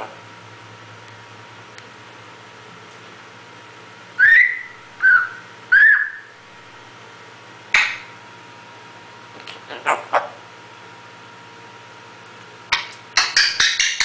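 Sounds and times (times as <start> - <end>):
animal whistle-like calls: 4.2 - 6.4.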